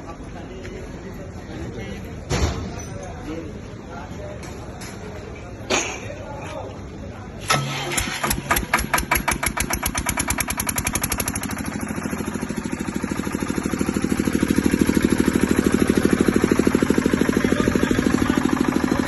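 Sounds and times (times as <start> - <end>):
diesel generator running: 7.4 - 19.0.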